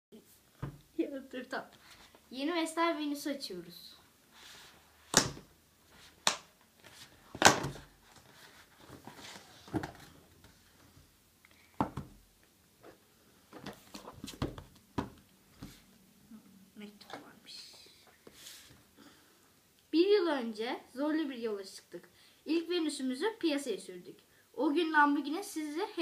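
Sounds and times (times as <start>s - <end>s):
paper rustling: 5.9s - 10.7s.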